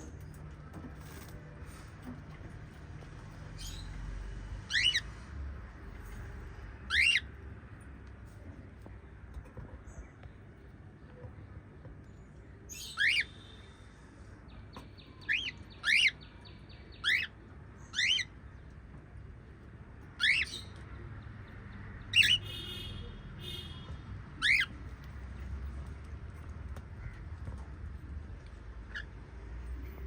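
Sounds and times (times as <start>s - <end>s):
parrots chirping shrilly: 4.6s - 5.1s, 6.8s - 7.3s, 12.7s - 13.5s, 15.3s - 16.2s, 17.0s - 17.3s, 17.9s - 18.4s, 20.2s - 20.8s, 22.1s - 22.8s, 24.4s - 24.8s
soft buzzy parrot chatter: 6.8s - 7.4s, 24.4s - 25.5s.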